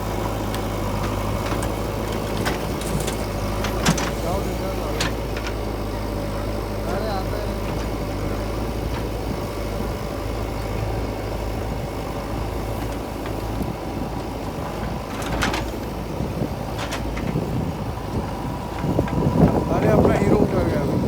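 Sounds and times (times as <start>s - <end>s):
heavy diesel engine running: 0.0s - 21.0s
metallic clanks: 14.9s - 15.9s.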